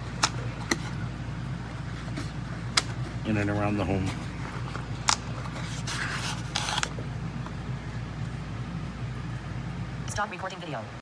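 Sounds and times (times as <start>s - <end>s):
steady low hum: 0.0s - 11.0s
rustling scrapes: 1.7s - 8.9s.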